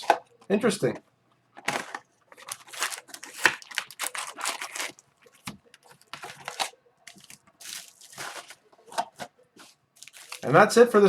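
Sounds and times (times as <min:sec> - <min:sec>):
card wrappers tearing and crinkling: 0:01.6 - 0:09.2, 0:10.0 - 0:10.6.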